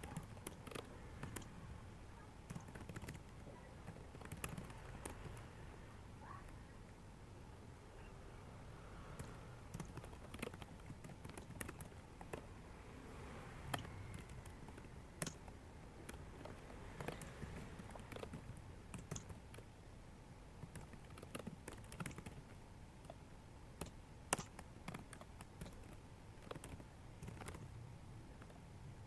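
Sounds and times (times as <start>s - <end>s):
computer keyboard keystrokes: 0.0s - 1.5s, 2.5s - 5.5s, 9.1s - 12.5s, 13.7s - 19.7s, 20.6s - 23.2s, 23.8s - 27.7s.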